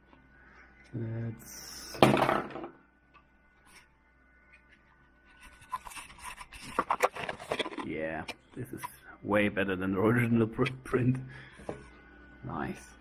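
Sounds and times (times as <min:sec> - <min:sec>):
hard plastic clicking and scraping: 0:05.7 - 0:08.9.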